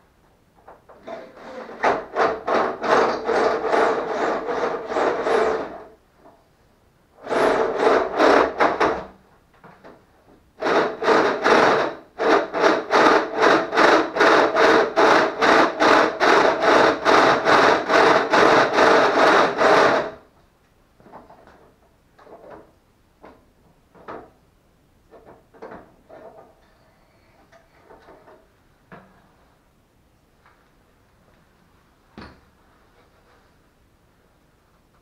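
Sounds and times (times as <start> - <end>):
tool scraping metal: 1.0 - 5.9.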